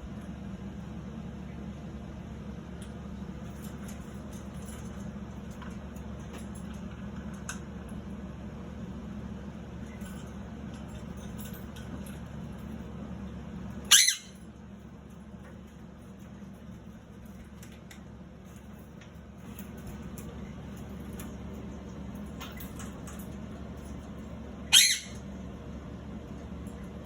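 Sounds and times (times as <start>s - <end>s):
steady low hum: 0.0s - 27.0s
parrot squawk: 13.9s - 14.4s, 24.7s - 25.2s.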